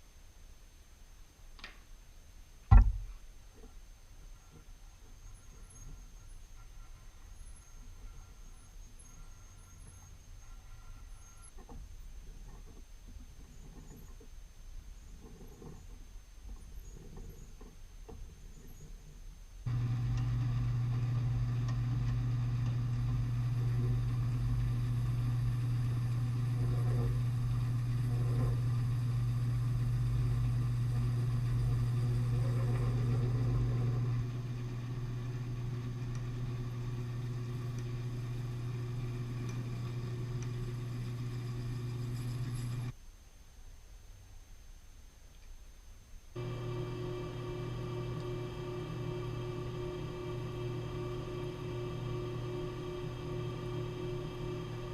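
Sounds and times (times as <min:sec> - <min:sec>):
lathe electric motor running: 0:19.7 - 0:42.9, 0:46.4 - 0:54.9.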